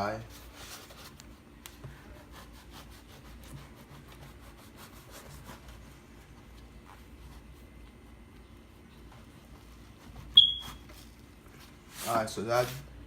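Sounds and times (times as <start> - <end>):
knife sawing through bread: 2.1 - 5.7.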